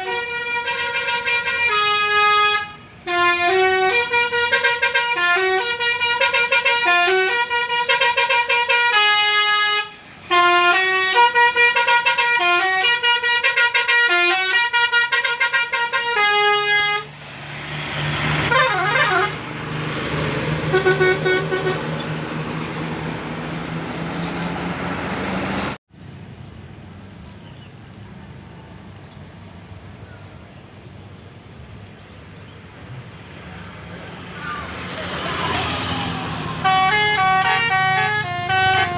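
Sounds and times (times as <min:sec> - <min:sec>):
multi-tone air horn melody: 0:00.0 - 0:17.1, 0:18.4 - 0:19.4, 0:20.6 - 0:22.2, 0:36.4 - 0:38.9.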